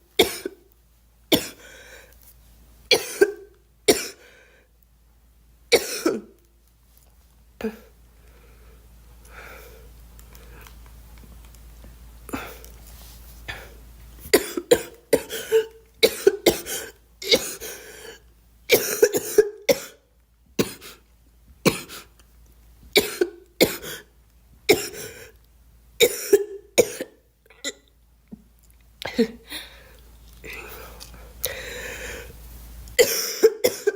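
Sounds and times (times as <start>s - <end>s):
girl coughing: 0.2s - 0.6s, 1.3s - 1.6s, 2.9s - 4.2s, 5.7s - 6.3s, 14.4s - 20.0s, 20.6s - 21.0s, 21.6s - 22.1s, 23.0s - 24.1s, 24.7s - 25.2s, 26.0s - 27.9s, 29.1s - 29.5s, 33.0s - 33.9s.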